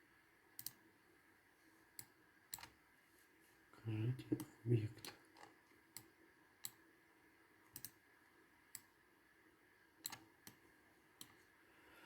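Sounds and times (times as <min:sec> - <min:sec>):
faint room hum: 0:00.0 - 0:12.0
computer mouse clicks: 0:00.6 - 0:00.8, 0:02.0 - 0:02.8, 0:04.4 - 0:06.8, 0:07.7 - 0:08.0, 0:08.7 - 0:09.0, 0:10.0 - 0:10.6.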